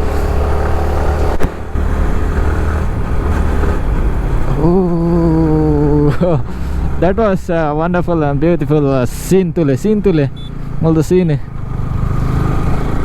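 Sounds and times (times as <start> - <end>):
motorcycle engine rumble: 0.0 - 13.0
person humming: 4.5 - 6.2.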